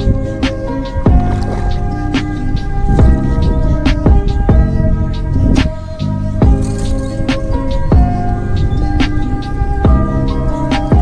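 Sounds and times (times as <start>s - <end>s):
held music chords: 0.0s - 11.0s.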